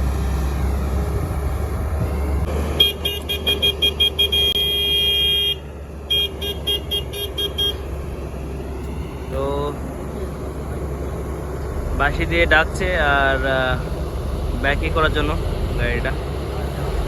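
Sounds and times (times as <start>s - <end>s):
whistle blasts: 0.0s - 11.0s
diesel engine rumbling: 0.0s - 17.0s.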